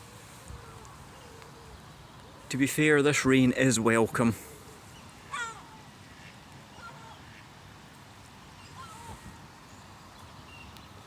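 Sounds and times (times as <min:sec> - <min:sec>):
rain hissing: 0:00.0 - 0:11.0.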